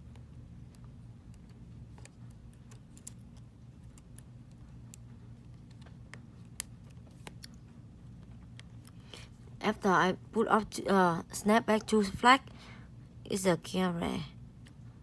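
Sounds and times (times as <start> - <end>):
steady low hum: 0.0 - 15.0
small clicks of phone parts: 0.1 - 5.0.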